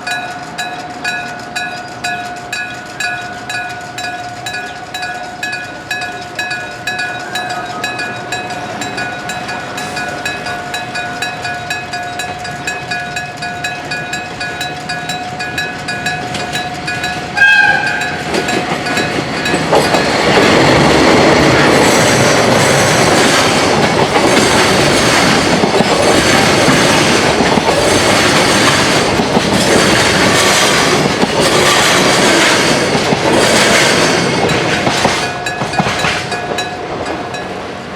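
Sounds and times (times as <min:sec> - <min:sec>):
level-crossing bell ringing: 0:00.0 - 0:22.5, 0:34.3 - 0:37.9
freight train passing: 0:00.0 - 0:37.9
train wheels clacking on rail joints: 0:00.0 - 0:37.9
locomotive horn blast: 0:17.3 - 0:18.4.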